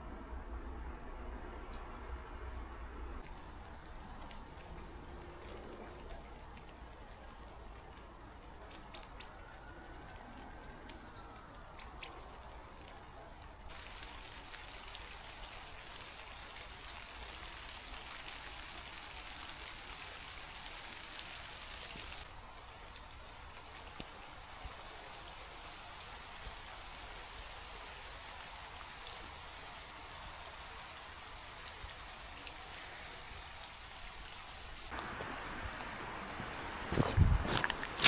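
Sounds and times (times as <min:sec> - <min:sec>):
rain hissing: 0:11.5 - 0:38.0.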